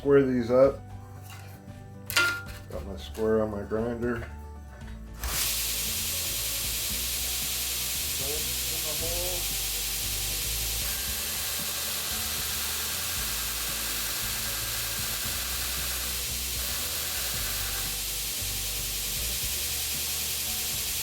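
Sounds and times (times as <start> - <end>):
grinder grinding steel: 5.2 - 21.0.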